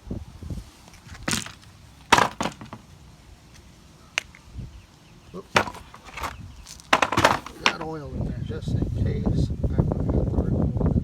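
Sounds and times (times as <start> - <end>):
hard parts knocking and clunking: 1.3 - 2.9, 5.5 - 7.9.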